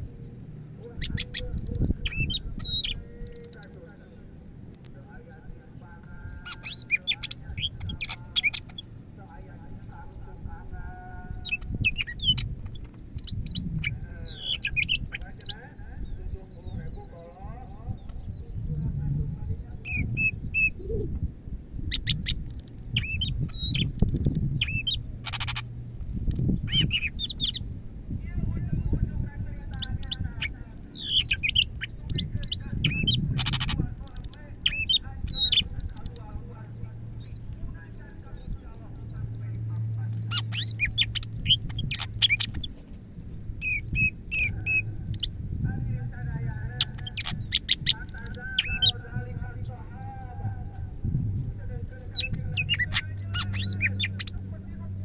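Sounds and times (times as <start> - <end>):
bird singing whistles and chirps: 0.8 - 3.8, 6.2 - 8.9, 11.3 - 18.8, 19.6 - 21.2, 21.8 - 27.6, 29.6 - 36.3, 38.3 - 49.7, 50.7 - 54.6.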